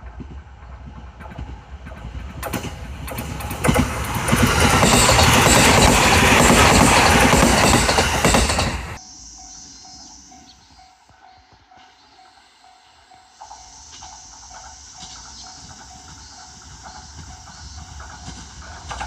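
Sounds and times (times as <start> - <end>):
train wheels clattering over rail joints: 0.0 - 9.0, 13.4 - 19.0
electric train passing at speed: 0.0 - 19.0.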